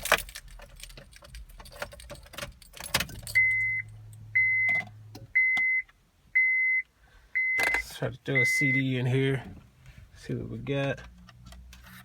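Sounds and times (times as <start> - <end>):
key clicks and rattle: 0.0 - 3.6
car warning chime beeping: 3.3 - 9.1.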